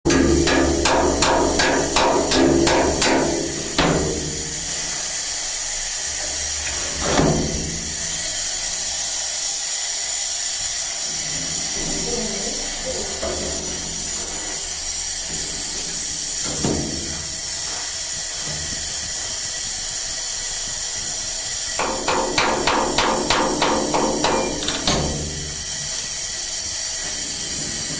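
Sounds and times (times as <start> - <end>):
welding arc crackling hiss: 0.1 - 27.9.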